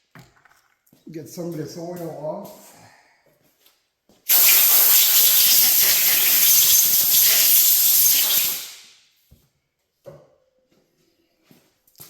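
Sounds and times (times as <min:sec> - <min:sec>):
air blow gun hissing: 0:04.3 - 0:08.9.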